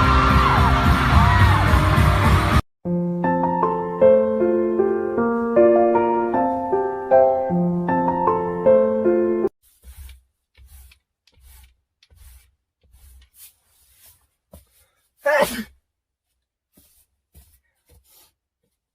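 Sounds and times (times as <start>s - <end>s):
soft scuffing or rustling: 9.6s - 15.2s, 16.2s - 18.9s
young man sneezing: 15.2s - 15.8s.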